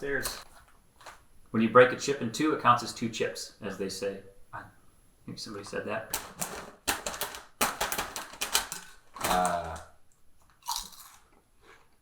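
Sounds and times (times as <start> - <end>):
crunching potato chips: 6.9 - 11.4.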